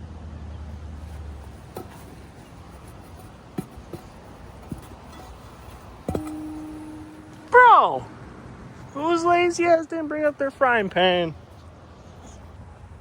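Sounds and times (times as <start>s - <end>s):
steady pitched ring: 0.7s - 9.0s
light clicks and knocks: 0.9s - 7.6s.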